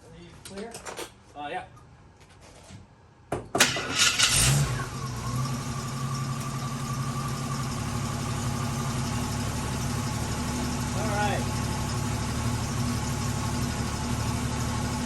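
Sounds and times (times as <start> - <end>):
jeep engine starting and idling: 3.6 - 15.0.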